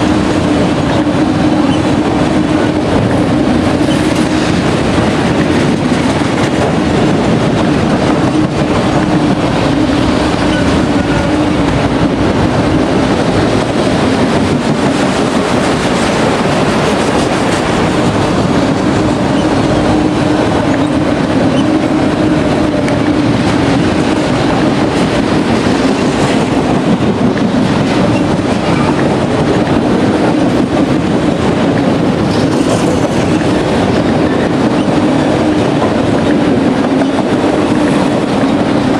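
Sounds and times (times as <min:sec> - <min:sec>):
steel wheels rumbling on rail: 0:00.0 - 0:38.9.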